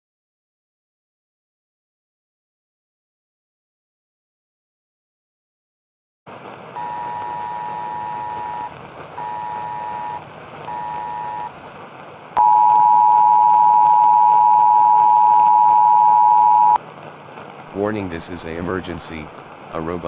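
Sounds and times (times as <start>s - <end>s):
background hiss: 6.3s - 14.7s, 16.1s - 20.0s
alert beeps and long tone: 6.8s - 11.6s, 12.4s - 16.8s.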